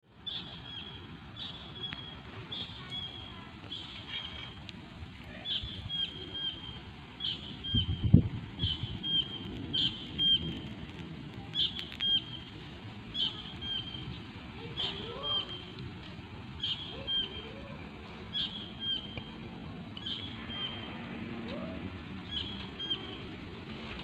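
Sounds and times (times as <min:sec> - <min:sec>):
bird calling: 0:00.2 - 0:15.9, 0:16.5 - 0:23.4
wind rushing: 0:07.6 - 0:14.6.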